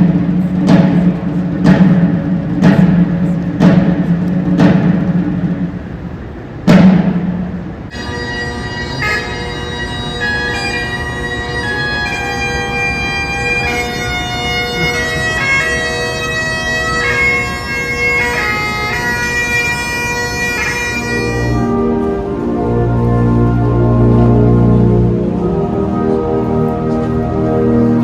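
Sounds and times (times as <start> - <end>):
bagpipes playing melody: 7.9 - 28.0.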